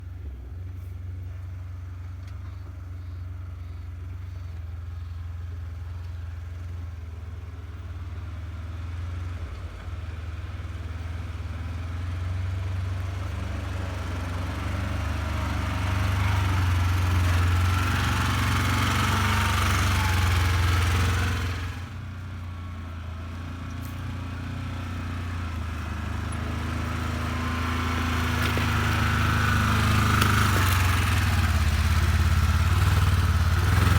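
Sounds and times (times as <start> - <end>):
utility vehicle engine running: 0.0 - 33.9
drivetrain and terrain noise: 9.1 - 33.9.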